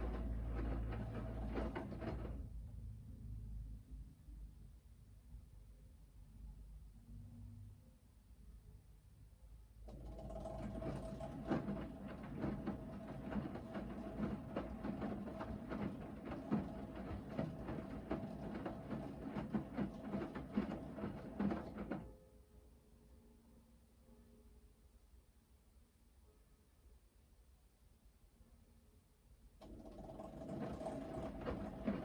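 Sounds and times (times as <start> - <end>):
clothes and water tumbling: 0.0 - 2.2, 10.6 - 22.0
washing machine motor whine: 0.0 - 2.3, 10.1 - 22.0, 29.6 - 32.0.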